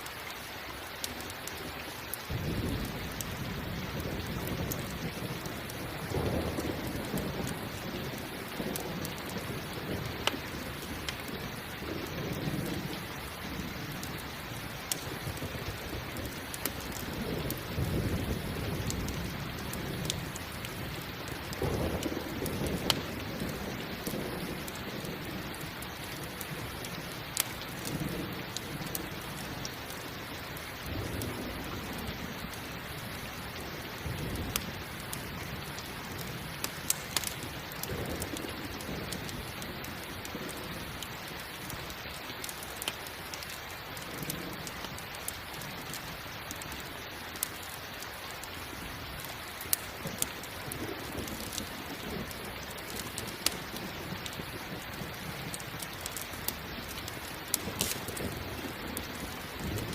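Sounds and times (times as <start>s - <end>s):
heavy rain: 0.0s - 59.9s
sharp crackles popping: 0.0s - 59.9s.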